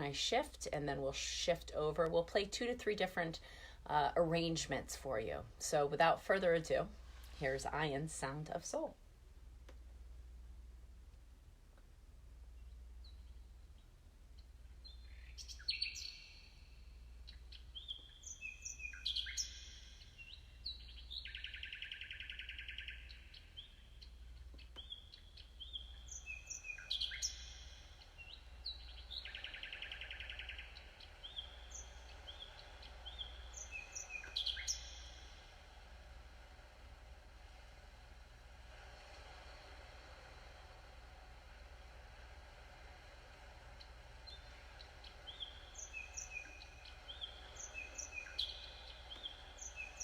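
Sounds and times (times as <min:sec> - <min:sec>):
low pulsing hum: 0:00.0 - 0:50.0
synthetic birdsong chirps and trills: 0:12.5 - 0:35.7, 0:43.6 - 0:50.0.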